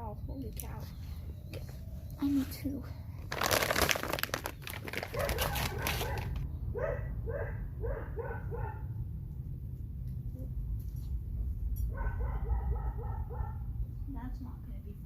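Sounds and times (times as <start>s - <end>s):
rustling crinkling handling noise: 1.5s - 6.4s
dog barking: 5.1s - 8.9s, 11.9s - 13.7s.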